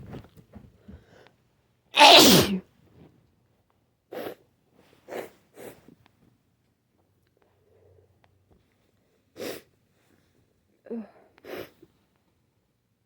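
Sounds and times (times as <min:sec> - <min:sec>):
person sneezing: 0:02.0 - 0:02.6.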